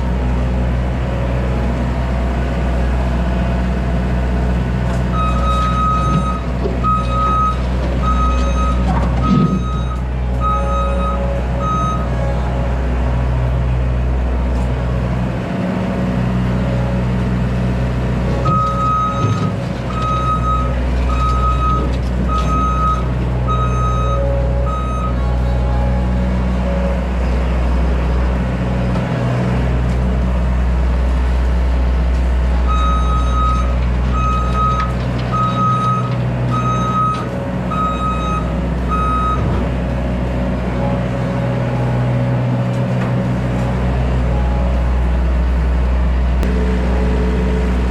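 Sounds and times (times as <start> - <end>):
skid steer engine running: 0.0 - 47.9
backup alarm beeping: 5.2 - 12.1.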